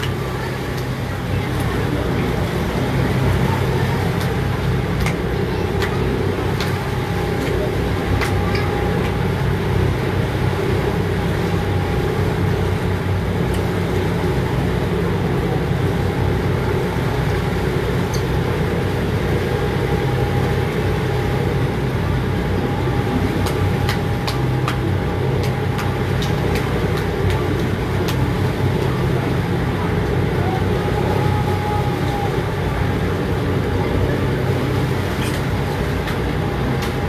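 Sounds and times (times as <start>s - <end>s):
boat engine droning: 0.0s - 37.0s.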